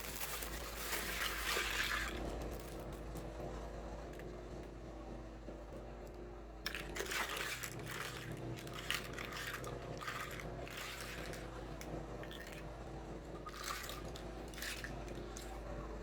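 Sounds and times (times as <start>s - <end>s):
plastic toy pieces crinkling: 0.0s - 2.9s, 6.7s - 11.5s.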